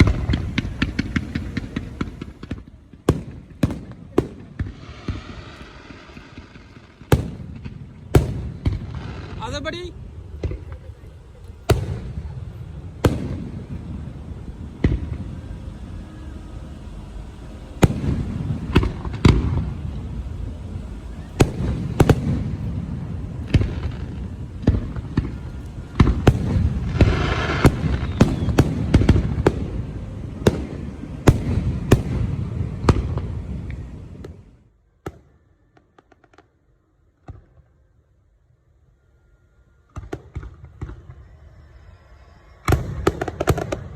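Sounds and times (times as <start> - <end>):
firecracker bangs: 0.0 - 10.9, 11.6 - 16.2, 17.4 - 35.3
faint fireworks pops: 0.0 - 37.8, 39.9 - 41.4, 42.6 - 43.9
fireworks crackling: 0.0 - 38.7, 39.7 - 43.9.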